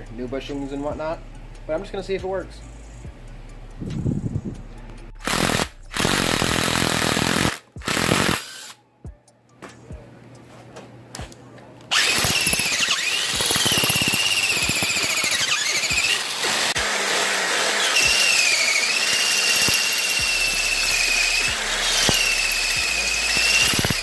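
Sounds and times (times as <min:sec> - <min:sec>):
power drill boring into metal: 0:05.2 - 0:08.8, 0:11.9 - 0:24.0.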